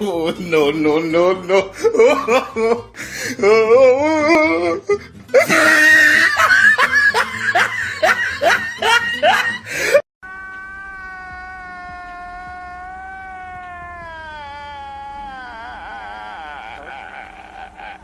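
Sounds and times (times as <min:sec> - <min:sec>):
rising laughs: 0:05.3 - 0:10.0, 0:16.0 - 0:18.0
wobbly warbling voice: 0:14.6 - 0:18.0.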